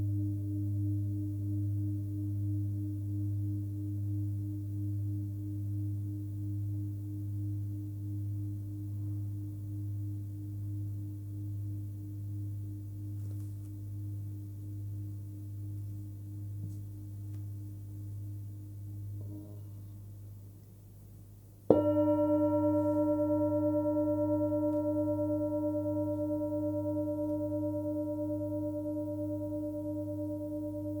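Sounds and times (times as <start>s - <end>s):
singing bowl ringing: 21.7s - 31.0s.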